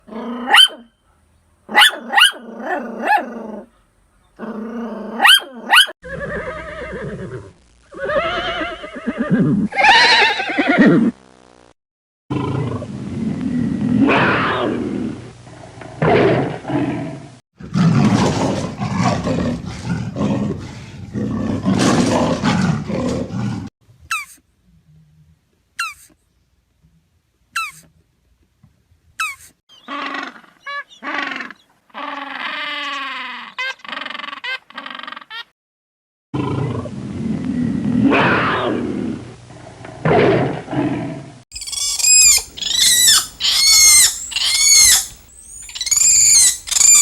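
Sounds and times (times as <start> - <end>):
short pitched animal cries: 6.1 - 11.0, 41.6 - 47.0
big cat roaring and growling: 12.3 - 23.7, 36.4 - 41.4
arching animal calls: 41.6 - 47.0.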